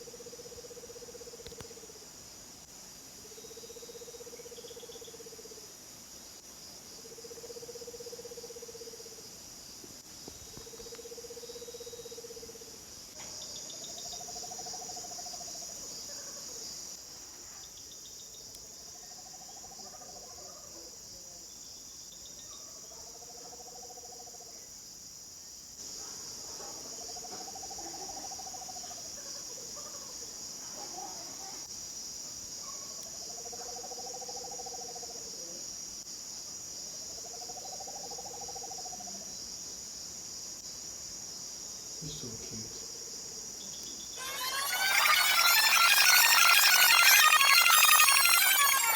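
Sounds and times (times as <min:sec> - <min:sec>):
crickets chirping: 0:00.0 - 0:48.9
higher-pitched owl call: 0:44.2 - 0:48.9
owl trilling call: 0:44.2 - 0:48.9.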